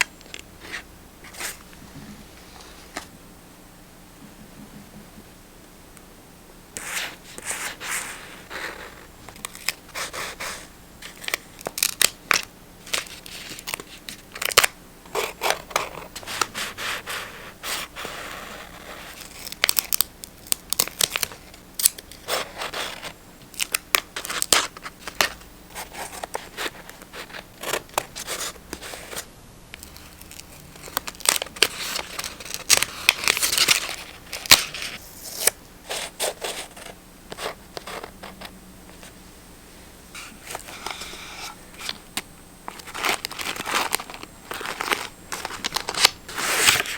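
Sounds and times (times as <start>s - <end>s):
paper rustling and tearing: 6.8s - 20.0s, 20.8s - 38.4s, 42.7s - 46.9s
paper being snipped: 44.6s - 46.9s.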